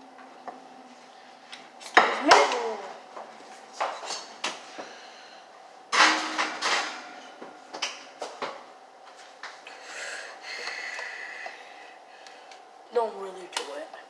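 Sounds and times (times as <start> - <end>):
objects knocking and clattering: 5.9 - 8.6.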